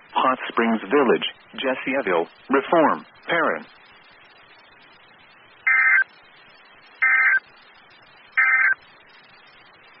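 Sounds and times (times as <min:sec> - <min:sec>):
faint hiss: 0:00.0 - 0:10.0
warbling digital data tones: 0:05.6 - 0:06.1, 0:07.0 - 0:07.5, 0:08.4 - 0:08.8.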